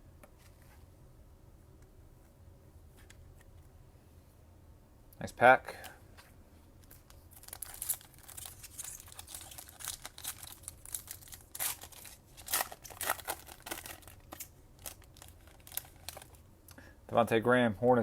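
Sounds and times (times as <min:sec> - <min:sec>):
plastic wrapper tearing and crinkling: 0:06.8 - 0:16.4.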